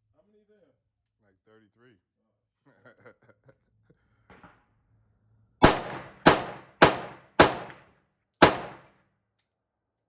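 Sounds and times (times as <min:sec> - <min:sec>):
gunshots with echo: 0:05.6 - 0:07.8, 0:08.4 - 0:08.9.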